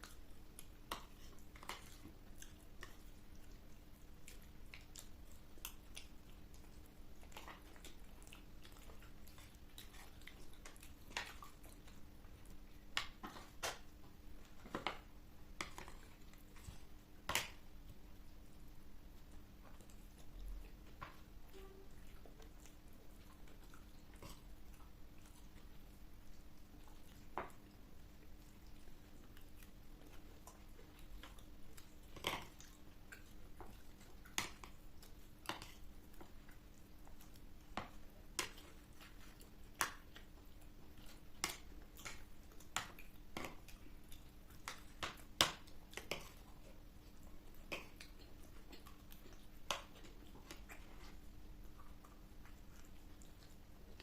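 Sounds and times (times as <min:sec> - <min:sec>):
chewing: 0:00.0 - 0:54.0
faint steady hum: 0:00.0 - 0:54.0.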